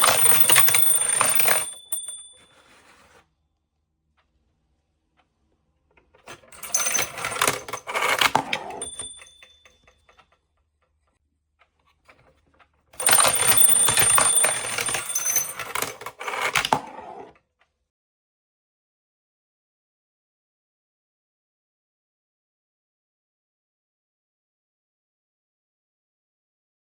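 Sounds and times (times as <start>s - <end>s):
high ringing tone: 0.0s - 3.0s, 8.6s - 9.8s, 13.0s - 15.8s
alarm clock rattling clatter: 0.0s - 3.2s, 6.2s - 10.4s, 13.0s - 16.8s.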